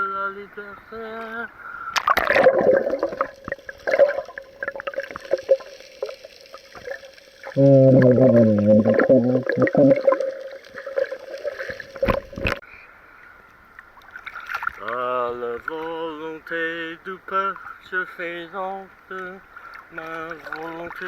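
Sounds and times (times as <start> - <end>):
water sloshing against camera housing: 11.0 - 12.6.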